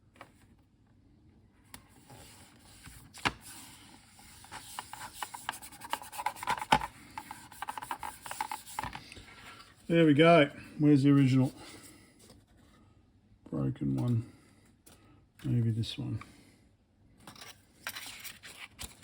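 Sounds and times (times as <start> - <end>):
scratchy rubbing on keyboard: 4.2 - 9.0.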